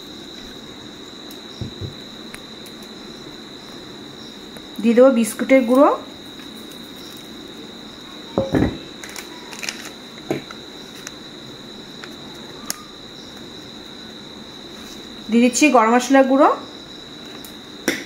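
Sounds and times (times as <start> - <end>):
cricket trill: 0.0 - 18.0
dull knock of a bowl: 8.4 - 8.8.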